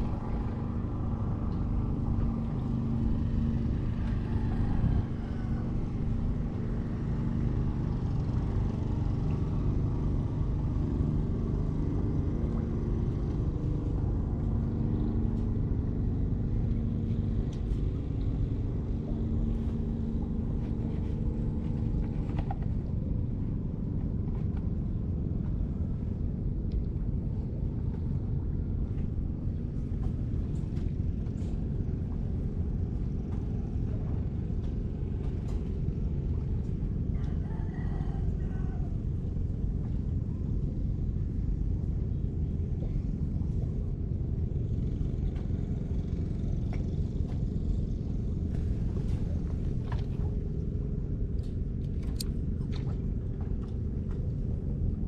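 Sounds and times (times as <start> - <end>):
motor engine running: 0.0 - 22.9, 42.4 - 55.0.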